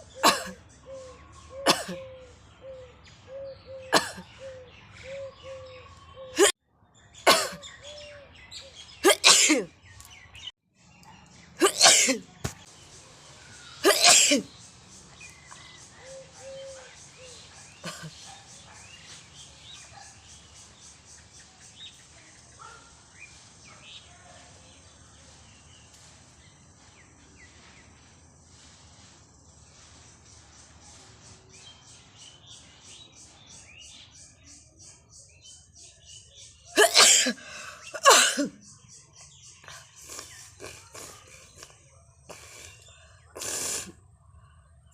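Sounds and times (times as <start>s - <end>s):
person sneezing: 0.2s - 0.6s, 9.0s - 9.7s, 11.6s - 12.3s, 13.8s - 14.5s, 36.8s - 38.6s, 43.4s - 44.0s.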